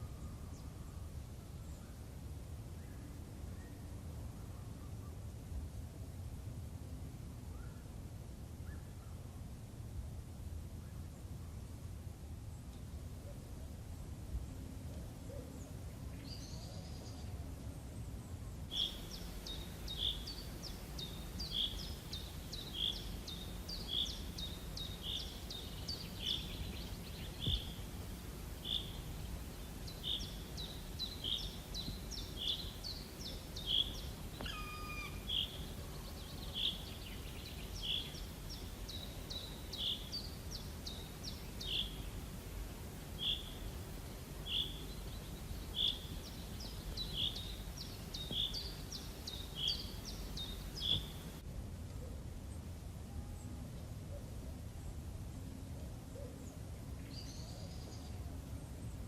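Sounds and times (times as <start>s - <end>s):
low background rumble: 13.7s - 53.6s
bird call gliding down in pitch: 34.4s - 35.5s
bird repeating a short high call: 34.4s - 35.5s.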